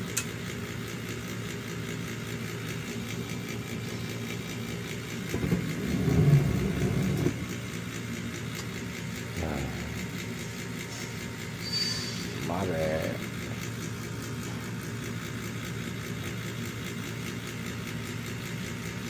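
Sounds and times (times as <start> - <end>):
gas furnace humming: 0.0 - 19.0
rough rumble: 5.2 - 7.6.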